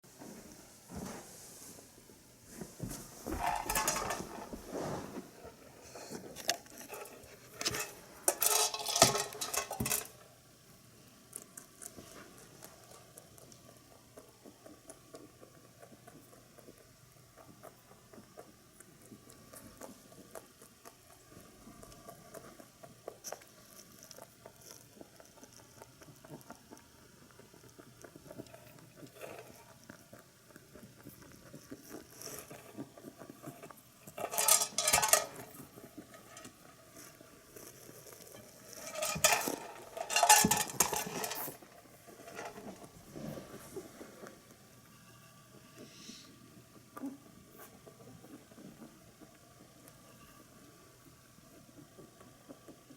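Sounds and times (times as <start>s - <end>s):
rabbit crunching pellets: 0.9s - 52.9s.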